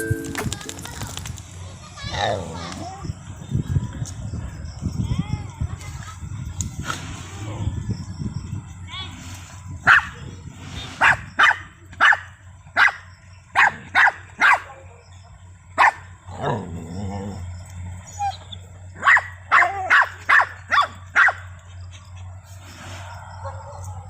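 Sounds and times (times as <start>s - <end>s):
dogs barking: 9.8s - 10.2s, 11.0s - 14.8s, 15.8s - 22.5s, 23.2s - 24.0s.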